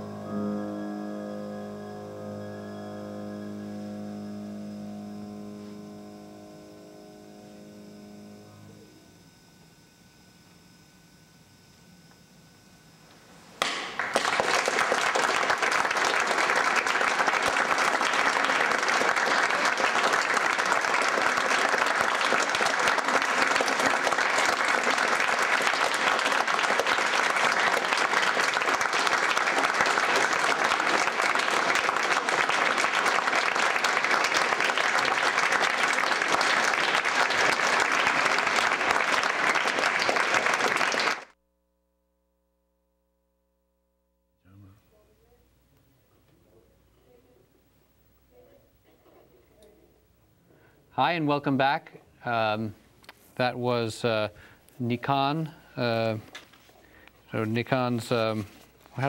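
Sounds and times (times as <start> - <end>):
audience applauding: 13.6 - 41.4.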